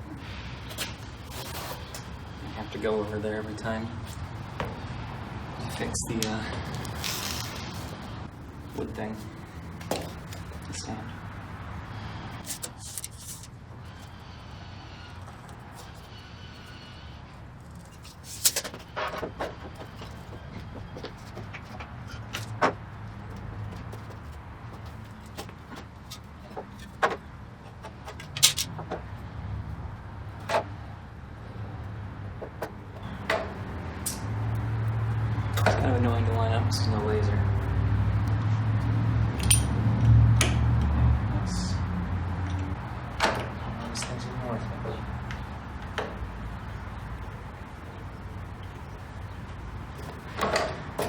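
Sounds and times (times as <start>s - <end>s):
steady low hum: 0.0s - 51.0s
clatter of wood and tool: 27.8s - 29.0s.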